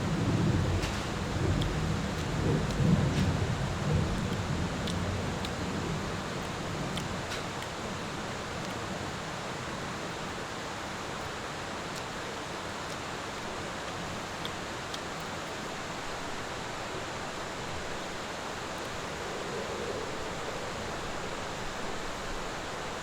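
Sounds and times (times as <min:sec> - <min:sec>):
faint ticks: 0:00.1 - 0:09.0
stream rushing: 0:06.2 - 0:23.0.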